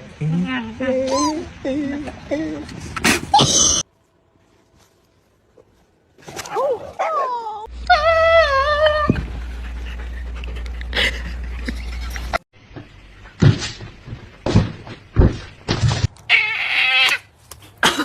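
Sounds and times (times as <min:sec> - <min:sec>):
dog panting: 0:09.3 - 0:12.4.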